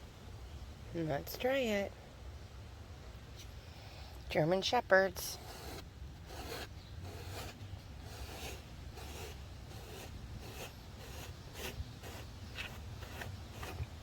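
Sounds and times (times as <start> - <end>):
brush scraping across fabric: 5.2 - 13.9.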